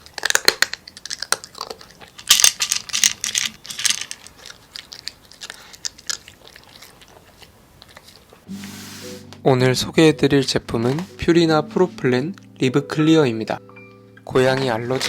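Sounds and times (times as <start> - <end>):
cat crunching dry kibble: 0.0 - 8.5.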